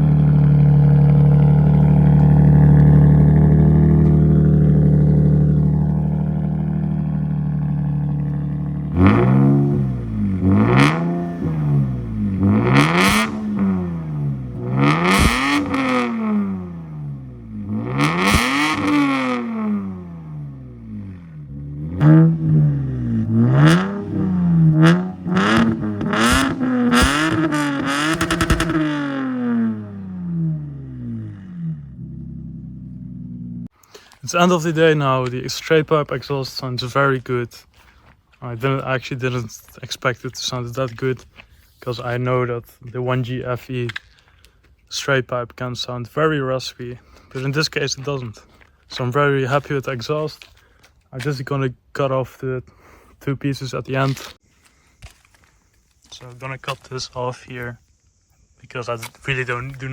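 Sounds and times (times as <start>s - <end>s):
car engine idling and revving: 0.0s - 33.8s.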